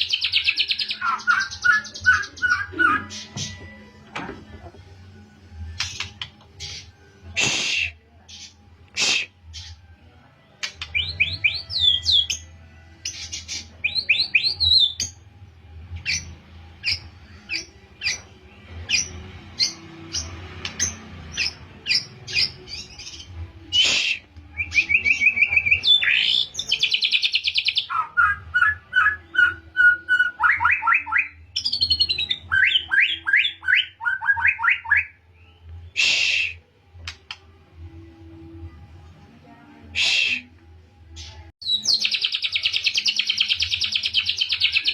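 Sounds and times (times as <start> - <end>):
bird singing chirps and trills: 0.0 - 3.8, 41.2 - 44.9.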